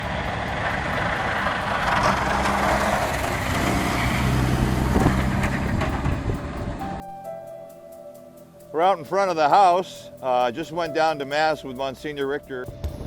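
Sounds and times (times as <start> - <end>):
vehicle engine running: 0.0 - 7.0
loud rushing noise: 0.0 - 7.1.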